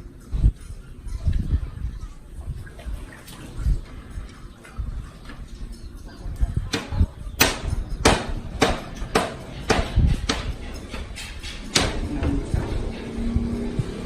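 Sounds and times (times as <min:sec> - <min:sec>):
sharp knocks: 0:06.8 - 0:10.6, 0:11.7 - 0:12.4.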